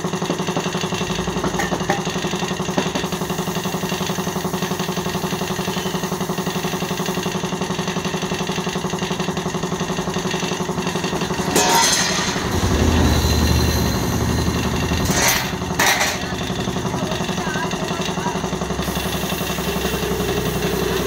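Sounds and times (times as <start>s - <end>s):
air compressor running: 0.0s - 21.0s
air hissing: 2.8s - 7.8s, 18.7s - 21.0s.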